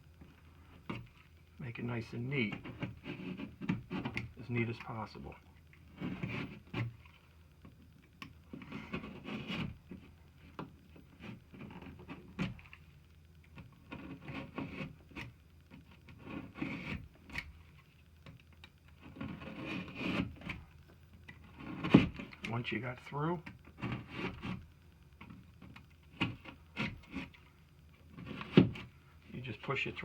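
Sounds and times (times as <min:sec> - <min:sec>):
knife scraping drywall: 0:02.5 - 0:04.3, 0:05.9 - 0:07.2, 0:08.5 - 0:12.8, 0:13.6 - 0:17.5, 0:19.0 - 0:20.6, 0:21.3 - 0:22.5, 0:23.6 - 0:24.6, 0:25.2 - 0:29.5.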